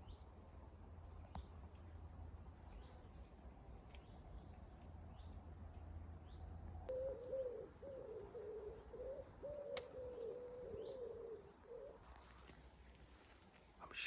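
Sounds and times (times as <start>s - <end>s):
pigeon cooing: 6.9s - 12.0s.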